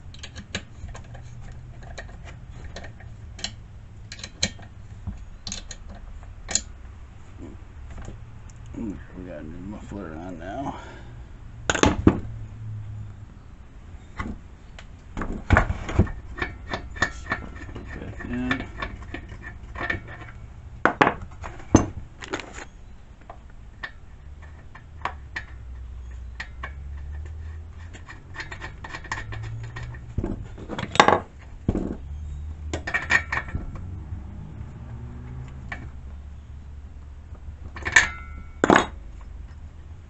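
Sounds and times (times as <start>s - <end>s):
metal tools clinking and knocking: 0.0s - 6.7s, 15.9s - 20.4s, 23.7s - 33.8s, 37.6s - 39.6s.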